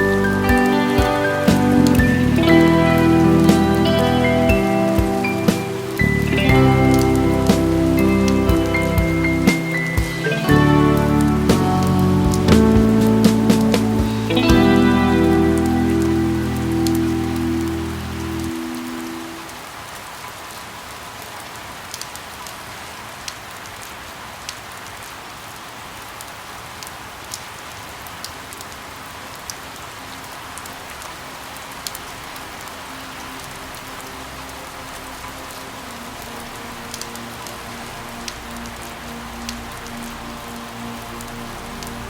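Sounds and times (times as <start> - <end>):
steady rain: 0.0 - 42.0.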